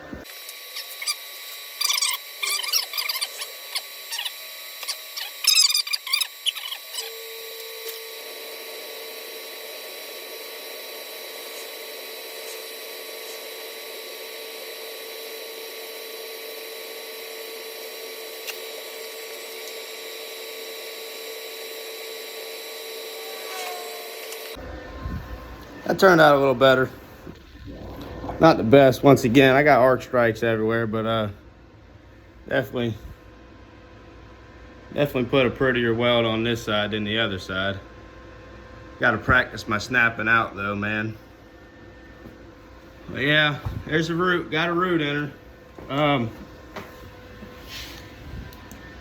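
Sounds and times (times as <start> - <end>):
welding arc hissing and humming: 0.0 - 30.1.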